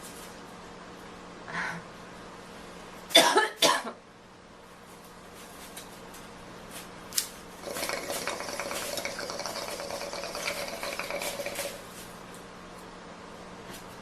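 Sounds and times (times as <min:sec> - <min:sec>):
water running: 0:07.6 - 0:11.8.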